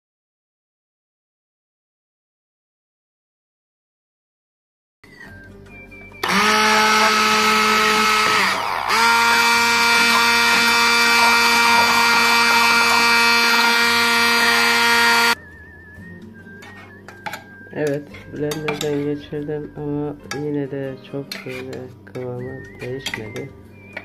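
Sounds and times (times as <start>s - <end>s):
electric blender running: 6.2s - 15.4s.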